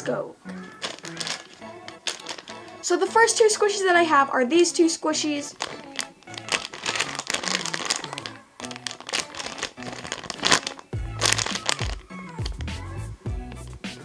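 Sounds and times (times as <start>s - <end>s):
plastic crinkling: 0.5s - 2.9s, 5.4s - 12.9s
background music with bass: 11.0s - 14.0s.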